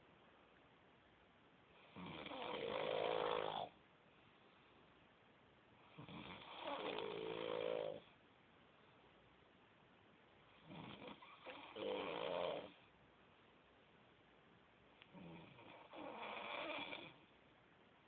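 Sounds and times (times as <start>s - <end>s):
man snoring: 1.8s - 3.7s, 5.9s - 8.0s, 10.6s - 12.8s, 15.2s - 17.2s.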